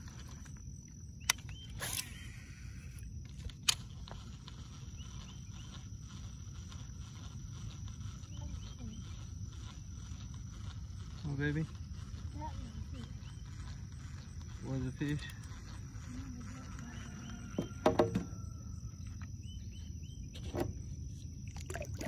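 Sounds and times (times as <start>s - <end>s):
high insect drone: 0.0s - 22.0s
sharp knocks: 17.8s - 18.3s.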